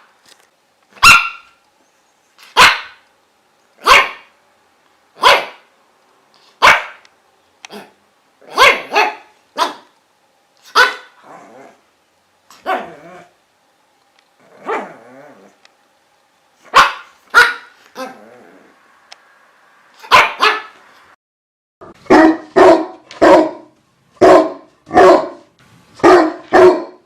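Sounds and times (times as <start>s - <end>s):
dog barking: 1.0s - 1.6s, 2.5s - 3.0s, 3.8s - 4.3s, 5.2s - 5.7s, 6.6s - 7.0s, 7.7s - 9.9s, 10.7s - 11.2s, 12.6s - 13.0s, 14.6s - 15.0s, 16.7s - 18.2s, 20.0s - 20.8s, 21.9s - 27.0s.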